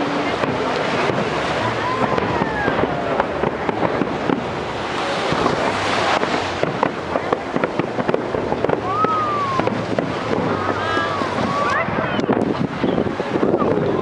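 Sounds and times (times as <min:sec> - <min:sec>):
fireworks crackling and popping: 0:00.0 - 0:14.0
falling firework whistle: 0:08.6 - 0:11.8.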